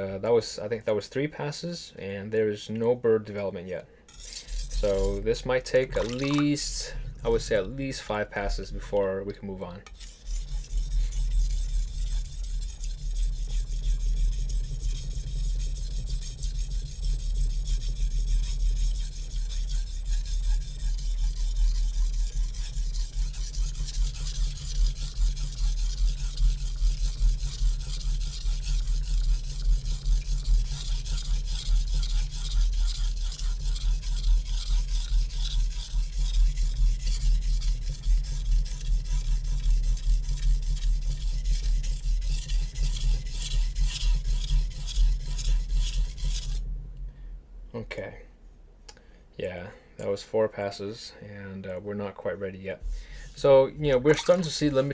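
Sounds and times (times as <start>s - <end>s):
steady low hum: 3.8s - 49.9s
knife scraping on whetstone: 4.1s - 9.0s, 9.8s - 46.6s, 52.9s - 54.9s.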